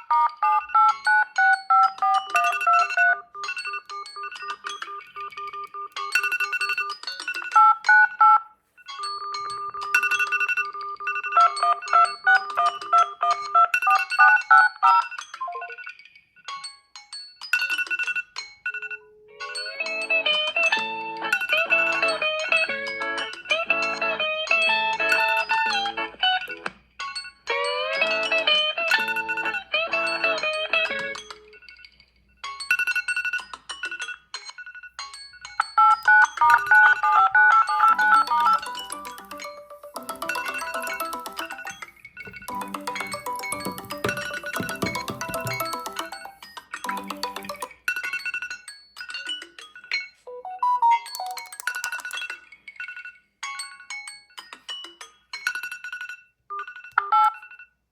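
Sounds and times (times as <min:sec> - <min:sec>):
electronic phone ringtone: 0:00.0 - 0:15.9, 0:28.9 - 0:29.7, 0:35.6 - 0:48.4, 0:55.4 - 0:57.8.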